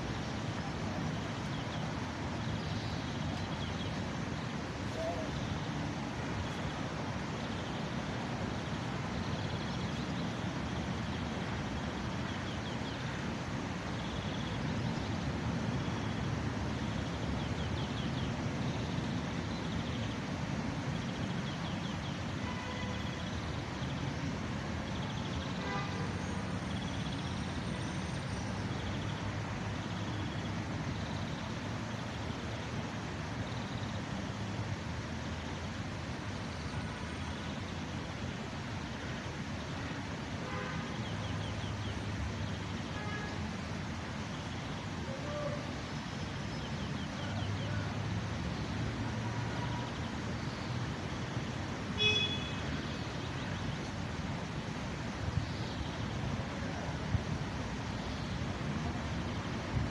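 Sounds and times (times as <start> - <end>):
traffic noise: 0.0 - 59.9.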